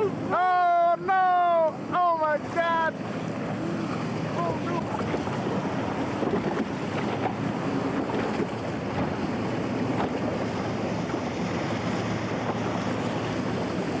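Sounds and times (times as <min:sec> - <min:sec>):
wind on microphone: 0:03.0 - 0:14.0.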